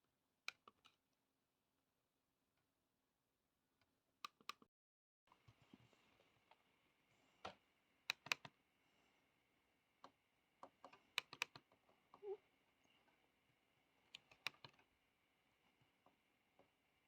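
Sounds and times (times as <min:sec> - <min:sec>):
faint irregular clicks: 0:03.8 - 0:04.7, 0:07.4 - 0:08.6, 0:10.0 - 0:15.0.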